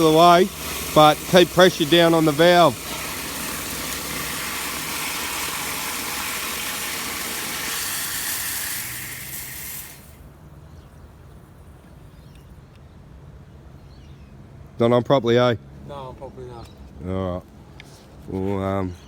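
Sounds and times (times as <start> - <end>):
water hissing from a pipe: 0.0 - 10.2.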